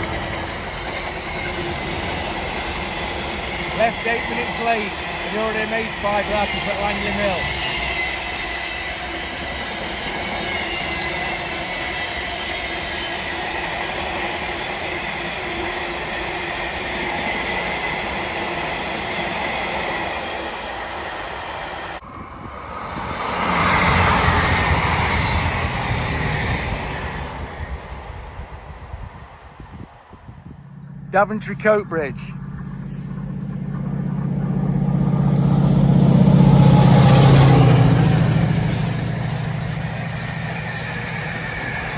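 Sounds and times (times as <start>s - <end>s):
diesel train engine drone: 0.0s - 41.9s
wheel squeal: 5.8s - 14.2s, 32.4s - 41.9s
freight wagons rolling past: 22.0s - 29.7s, 30.5s - 41.9s.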